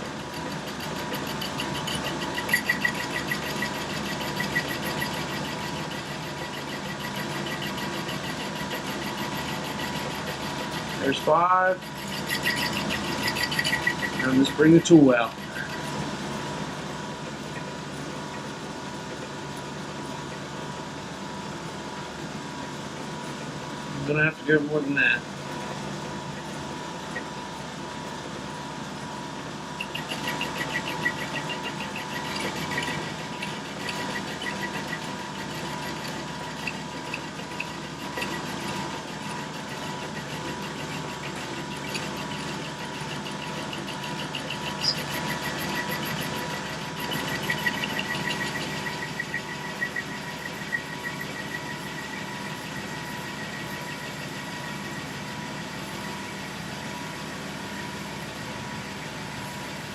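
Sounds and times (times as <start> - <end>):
lathe humming: 0.0 - 59.9
cutting tool ticking: 0.4 - 11.0, 11.7 - 15.9.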